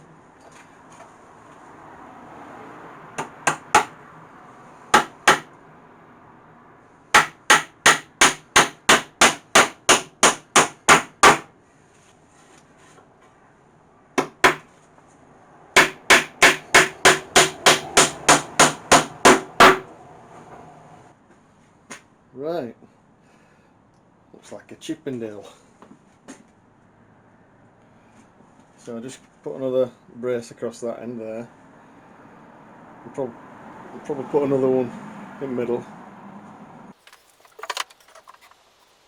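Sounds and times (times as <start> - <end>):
hammer driving nails into wood: 3.2 - 3.9, 4.9 - 5.5, 7.2 - 11.5, 14.2 - 14.7, 15.8 - 19.9.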